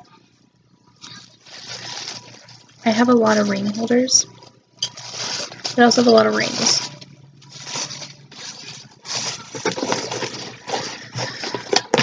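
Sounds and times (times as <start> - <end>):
packaging rustling: 1.0 - 12.0
items clicking and knocking: 8.6 - 12.0.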